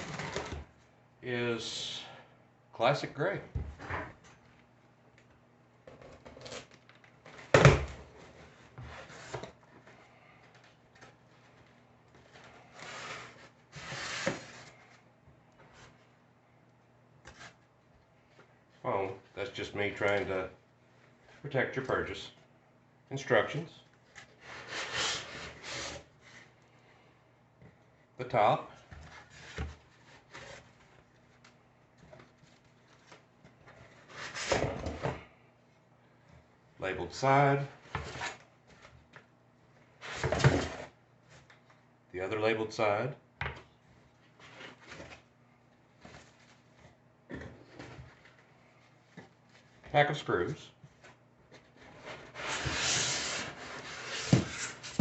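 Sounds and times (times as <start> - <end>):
cardboard box rubbing and scraping: 52.0 - 55.0.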